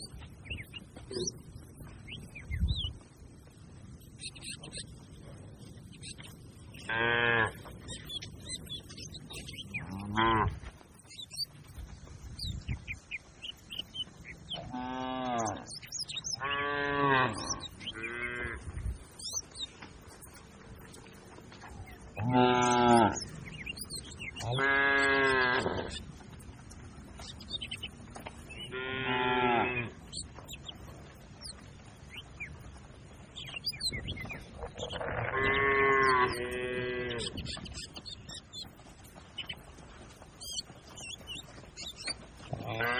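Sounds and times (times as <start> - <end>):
small birds chirping: 0.0 - 42.9
cow mooing: 9.8 - 10.5, 16.4 - 18.6, 22.2 - 23.2, 28.7 - 29.9, 34.9 - 37.4, 42.5 - 42.9.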